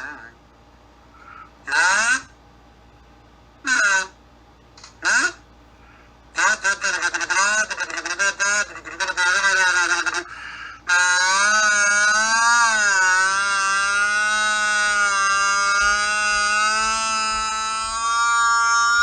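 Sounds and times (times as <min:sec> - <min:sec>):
kazoo buzzing wobbling note: 0:10.9 - 0:19.0.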